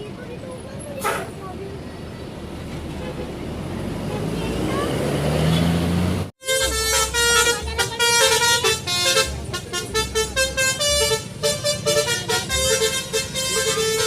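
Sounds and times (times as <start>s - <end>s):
bus musical horn melody: 6.4s - 14.0s.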